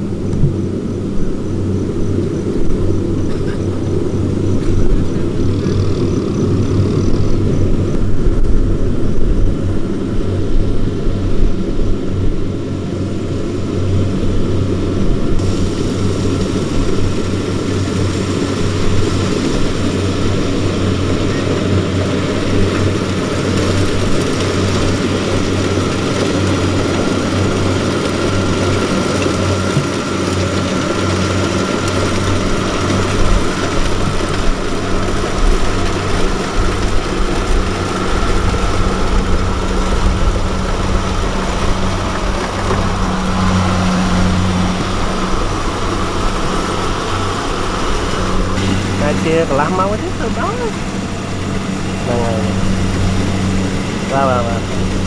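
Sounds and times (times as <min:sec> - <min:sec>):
diesel engine running under load: 0:00.0 - 0:55.0
faint steady whine: 0:00.0 - 0:55.0
rushing noise: 0:15.2 - 0:28.6.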